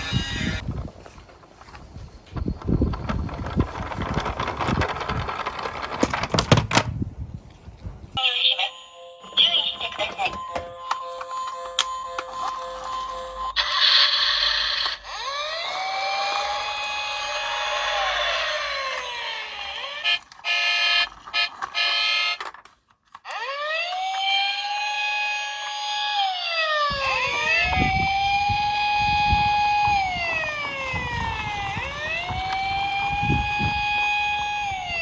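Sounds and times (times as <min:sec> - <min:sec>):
police siren wailing: 0:11.7 - 0:22.4, 0:23.3 - 0:35.0.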